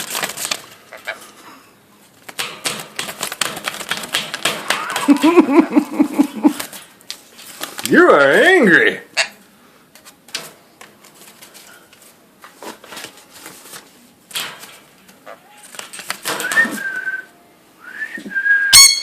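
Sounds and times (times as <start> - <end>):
parakeet whistled calls: 18.7 - 19.0.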